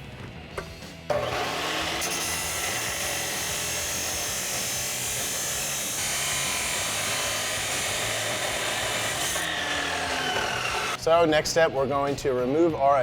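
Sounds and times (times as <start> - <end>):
chop saw cutting metal pipe: 1.1 - 11.0.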